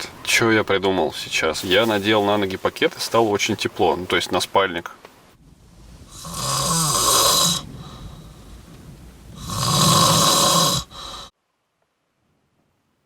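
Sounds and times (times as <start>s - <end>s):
man snoring: 6.2s - 8.2s, 9.4s - 11.3s.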